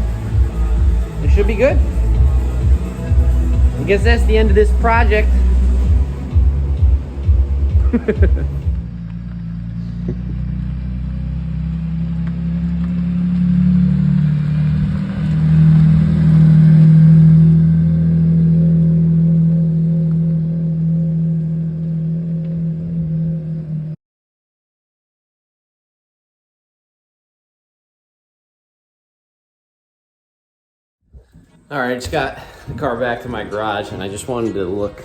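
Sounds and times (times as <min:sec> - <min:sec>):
car engine droning: 0:00.0 - 0:24.0.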